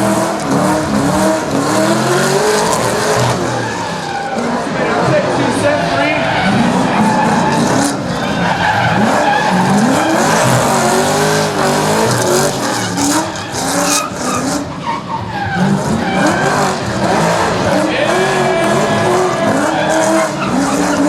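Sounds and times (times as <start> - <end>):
car engine revving hard: 0.0 - 21.0
tyres skidding: 0.0 - 21.0.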